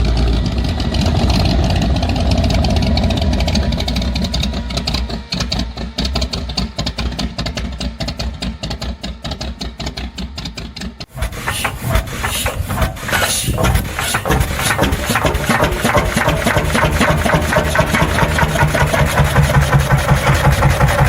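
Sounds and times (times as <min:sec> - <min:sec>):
old engine running: 0:00.0 - 0:21.0.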